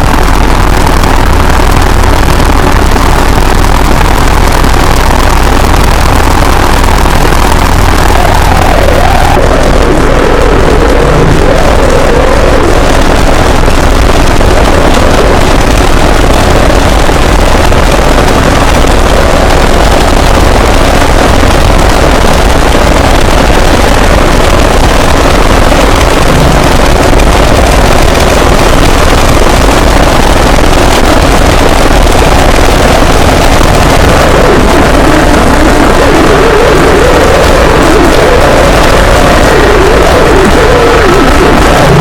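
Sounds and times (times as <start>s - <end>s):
distorted alarm noise: 0.0s - 42.0s.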